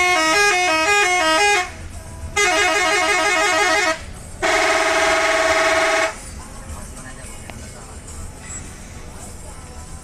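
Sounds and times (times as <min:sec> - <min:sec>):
multi-tone musical bus horn: 0:00.0 - 0:06.3.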